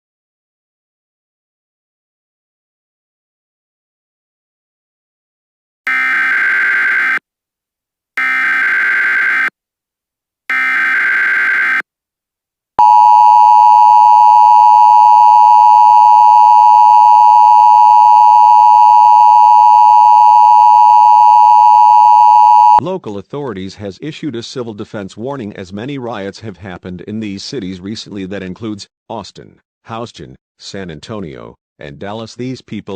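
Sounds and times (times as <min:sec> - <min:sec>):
steady two-tone attention signal: 0:12.8 - 0:22.8.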